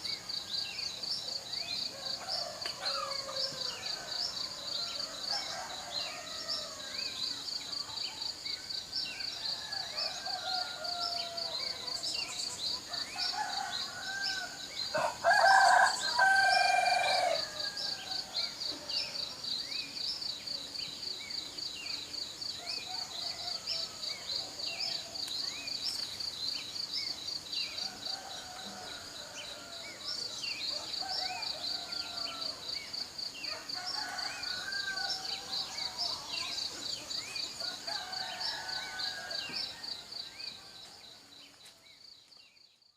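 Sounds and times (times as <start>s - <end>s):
insects chirping: 0.0s - 42.9s
rooster crowing: 13.2s - 18.3s, 33.5s - 35.7s, 37.6s - 39.6s.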